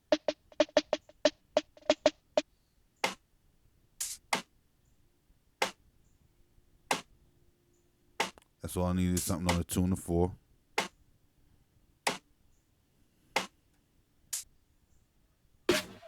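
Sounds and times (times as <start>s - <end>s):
sharp snare hits: 8.2s - 8.4s, 15.7s - 16.0s.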